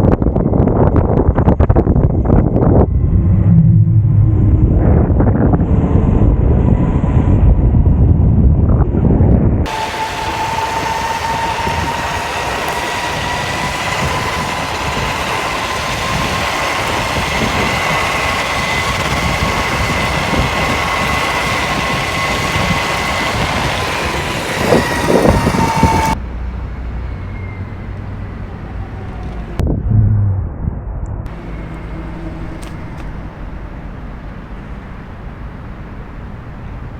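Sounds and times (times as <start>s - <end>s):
wind buffeting microphone: 0.0s - 36.9s
electric motor whine: 9.7s - 26.2s, 31.3s - 35.5s
wheels rolling hiss: 9.7s - 29.5s, 31.3s - 36.9s.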